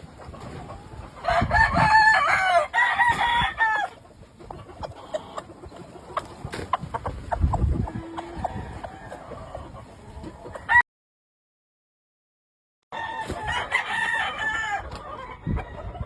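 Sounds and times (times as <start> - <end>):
rooster crowing: 1.2 - 4.0, 12.9 - 15.9.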